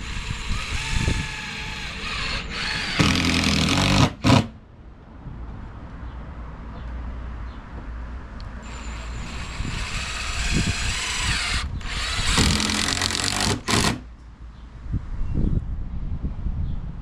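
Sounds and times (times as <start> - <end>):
power drill running: 0.0 - 4.5, 8.6 - 14.0.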